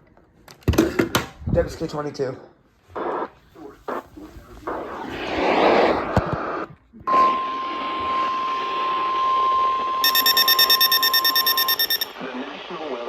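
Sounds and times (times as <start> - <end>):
radio hiss: 2.8 - 9.0, 11.8 - 13.0
steady warning alarm tone: 9.6 - 12.2
fast electronic beeping: 10.0 - 12.2.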